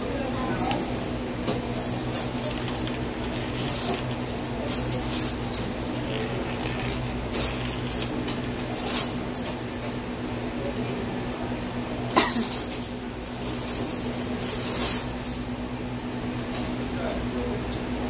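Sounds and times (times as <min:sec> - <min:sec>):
steady low hum: 0:00.0 - 0:10.6
rustling: 0:01.7 - 0:09.1.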